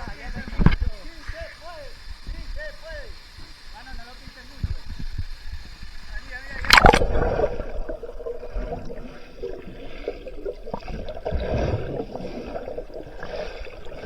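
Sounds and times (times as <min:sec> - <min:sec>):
water sloshing and gurgling: 0:04.7 - 0:14.0
small splashes: 0:06.3 - 0:14.0.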